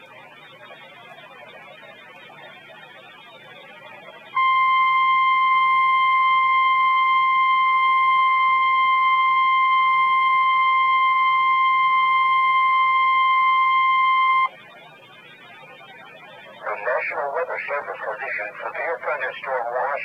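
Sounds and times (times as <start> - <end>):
high-pitched alarm tone: 4.4 - 15.7.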